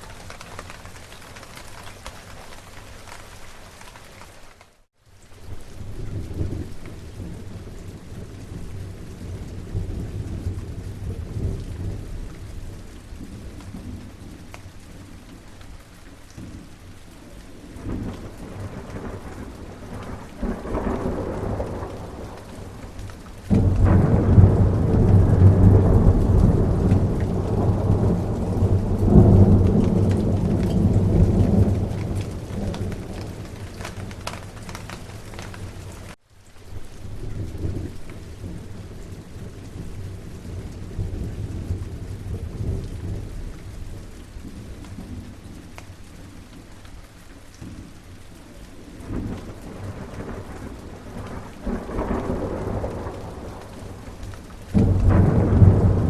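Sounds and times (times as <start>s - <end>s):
steady rain: 0.0s - 56.0s
thunder rolling: 17.8s - 36.2s, 49.0s - 56.0s.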